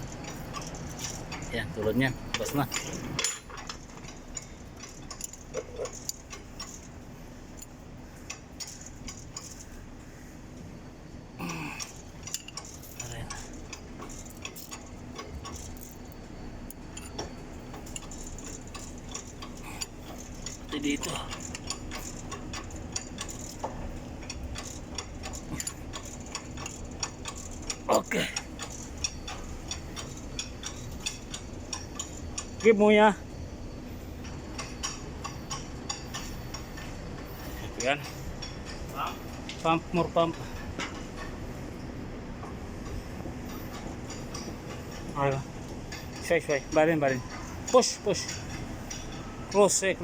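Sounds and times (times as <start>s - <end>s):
light metallic clicks and ticks: 11.5s - 33.1s.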